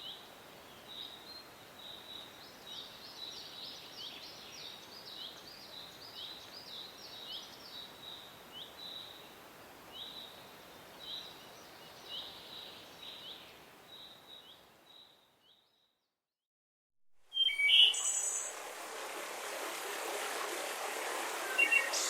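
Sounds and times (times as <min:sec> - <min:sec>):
soft breeze hiss: 0:00.0 - 0:15.5, 0:17.3 - 0:22.0
birds chirping: 0:17.3 - 0:18.6, 0:21.4 - 0:22.0.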